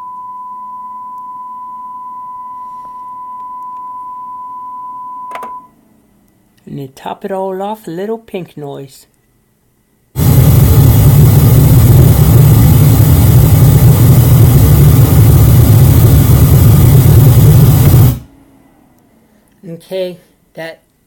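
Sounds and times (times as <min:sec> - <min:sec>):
loud pink noise hiss: 0:10.2 - 0:18.3.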